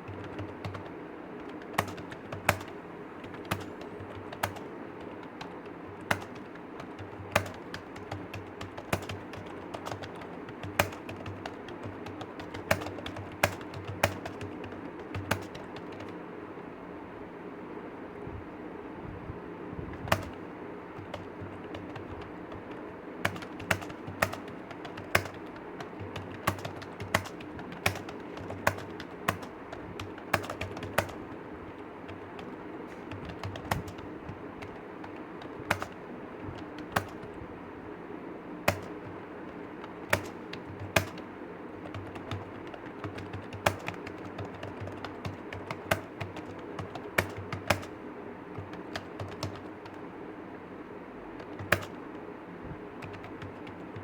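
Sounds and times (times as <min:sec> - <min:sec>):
computer keyboard typing: 0:00.0 - 0:16.3, 0:19.9 - 0:37.5, 0:38.6 - 0:50.1, 0:51.3 - 0:52.2, 0:52.9 - 0:54.0
steady background hum: 0:00.0 - 0:54.0.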